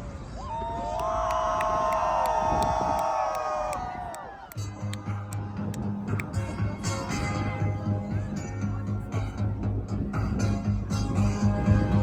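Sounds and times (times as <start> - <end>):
music with deep pulsing bass: 4.4 - 12.0.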